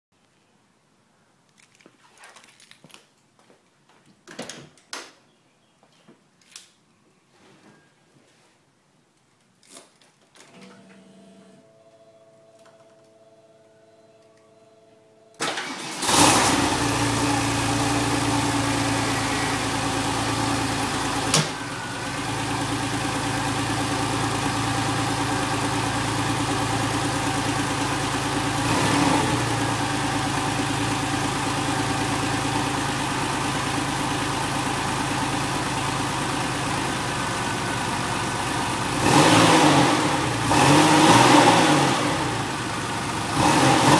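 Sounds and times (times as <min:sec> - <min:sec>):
faint steady hum: 0:10.4 - 0:15.6
car engine starting and idling: 0:10.5 - 0:43.9.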